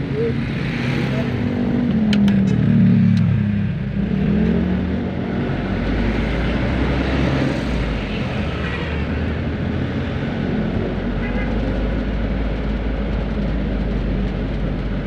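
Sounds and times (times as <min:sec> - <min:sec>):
low engine hum: 0:00.0 - 0:08.5
rushing vehicle noise: 0:00.0 - 0:15.0.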